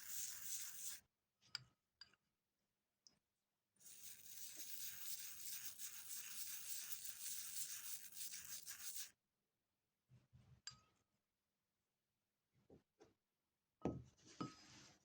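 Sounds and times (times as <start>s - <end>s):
coin being scrubbed by hand: 0.0s - 1.0s, 3.8s - 9.1s.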